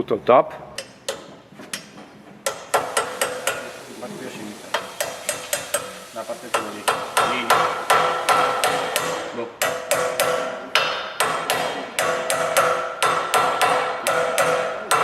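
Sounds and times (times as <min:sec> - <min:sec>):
hammer blows on metal: 0:02.5 - 0:03.8, 0:04.7 - 0:15.0.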